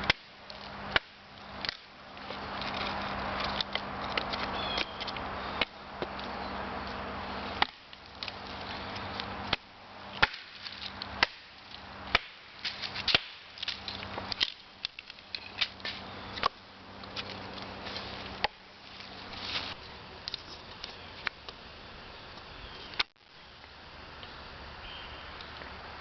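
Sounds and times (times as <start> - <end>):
axe chopping wood: 0.0 - 2.4, 7.6 - 8.4, 9.5 - 15.0.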